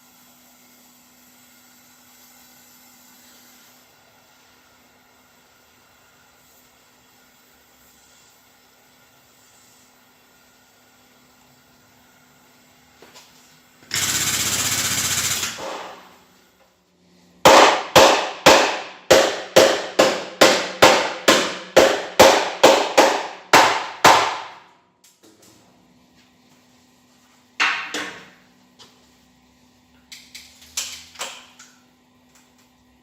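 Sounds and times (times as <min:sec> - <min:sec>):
hammer striking car body metal: 0:17.4 - 0:24.6.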